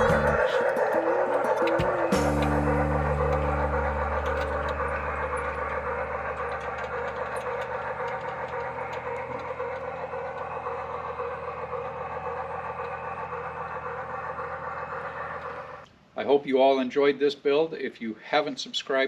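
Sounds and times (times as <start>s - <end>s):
steam locomotive running sound: 0.0s - 15.9s.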